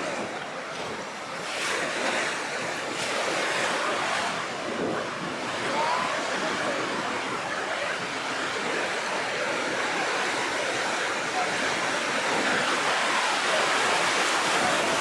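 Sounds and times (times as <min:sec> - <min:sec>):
sea surf breaking: 0:00.0 - 0:15.0
wind: 0:00.0 - 0:15.0.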